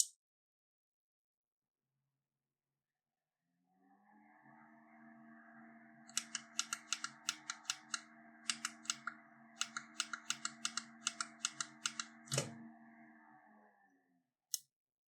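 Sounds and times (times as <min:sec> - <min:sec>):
electric fan motor humming: 0:06.0 - 0:13.3
sharp clicks: 0:06.1 - 0:12.5.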